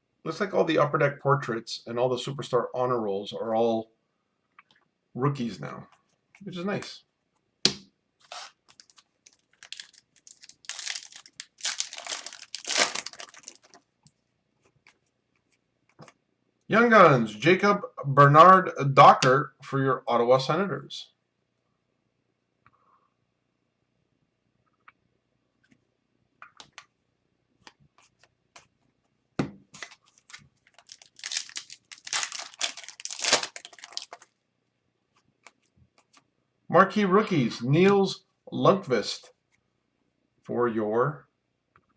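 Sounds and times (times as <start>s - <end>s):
wrapper crinkling: 8.3s - 13.8s, 29.8s - 34.3s.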